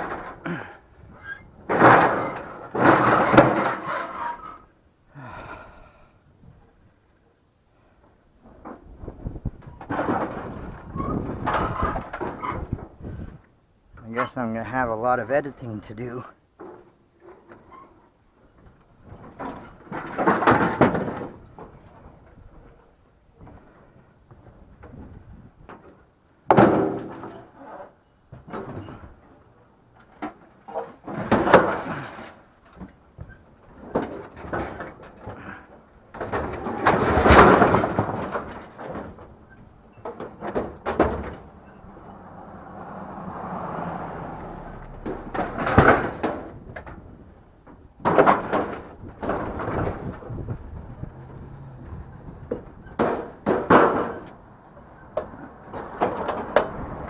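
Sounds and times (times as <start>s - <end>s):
bangs and clatter of scrap items: 1.7s - 4.4s, 9.8s - 12.4s, 19.1s - 21.8s, 26.5s - 27.6s, 30.1s - 39.3s, 44.9s - 50.3s, 52.5s - 54.4s.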